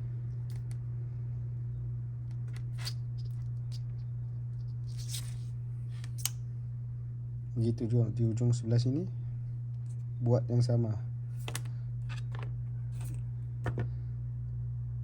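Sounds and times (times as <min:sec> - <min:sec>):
steady low hum: 0:00.0 - 0:15.0
small parts clicking and rustling: 0:11.4 - 0:13.8.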